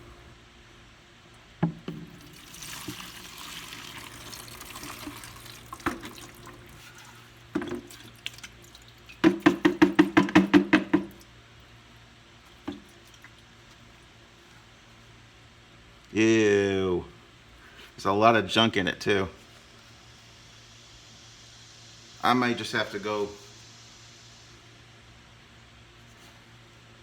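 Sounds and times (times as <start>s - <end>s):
knocks of a tank: 1.6s - 2.2s, 9.2s - 11.1s
gasoline pouring: 1.7s - 11.3s.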